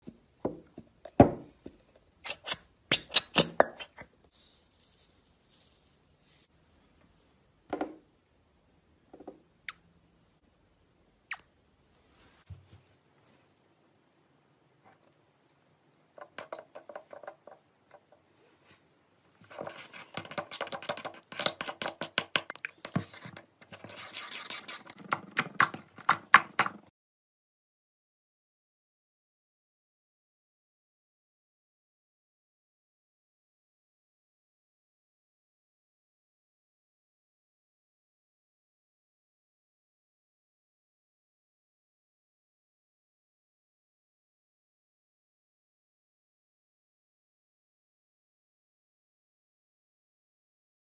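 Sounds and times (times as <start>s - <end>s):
soft hiss: 4.2s - 8.5s, 11.0s - 16.2s.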